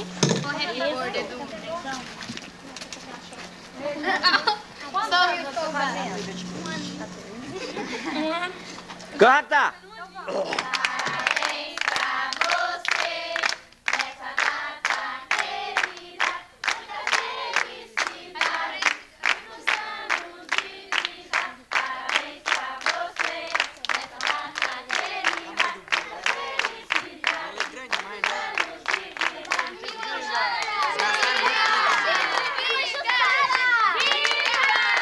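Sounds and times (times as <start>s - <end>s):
group of people singing: 10.3s - 33.4s
rhythmic clapping: 10.4s - 35.0s.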